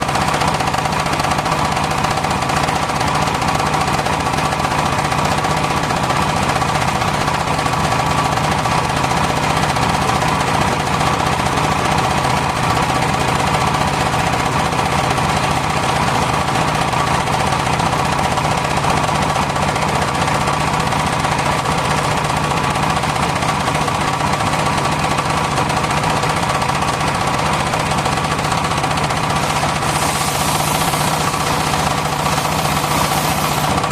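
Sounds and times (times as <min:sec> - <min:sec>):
sawmill machinery running: 0:00.0 - 0:33.9.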